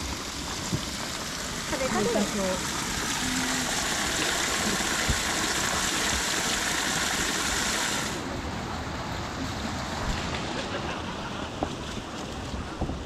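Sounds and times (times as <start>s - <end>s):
spring water pouring: 0.0s - 8.3s.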